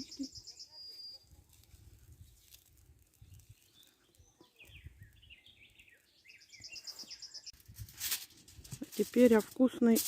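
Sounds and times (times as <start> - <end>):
faint birdsong: 0.0 - 7.6.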